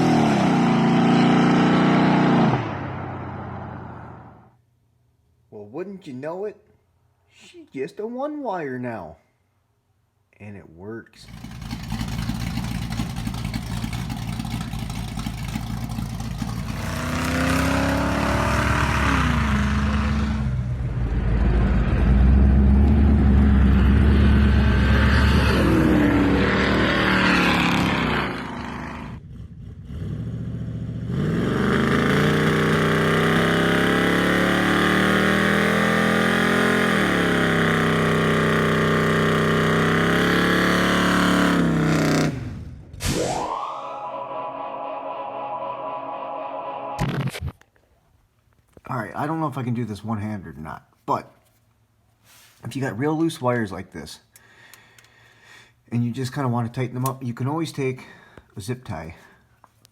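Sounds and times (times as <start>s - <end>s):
car engine revving: 0.0s - 4.5s, 11.2s - 42.9s.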